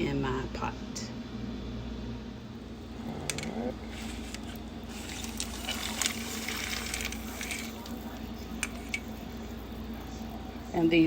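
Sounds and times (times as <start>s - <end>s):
water running from tap: 3.8s - 11.0s.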